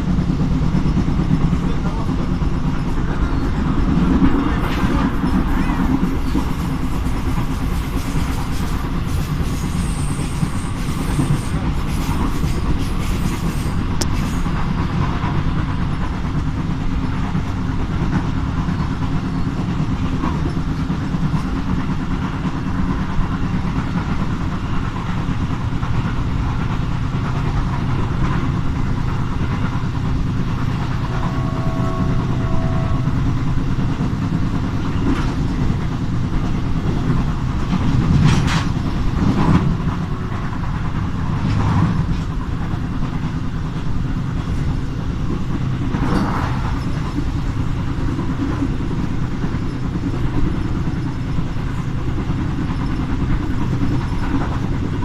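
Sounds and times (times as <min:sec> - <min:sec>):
train wheels rumbling on rails: 0:00.0 - 0:55.0
low even drone: 0:29.6 - 0:35.0.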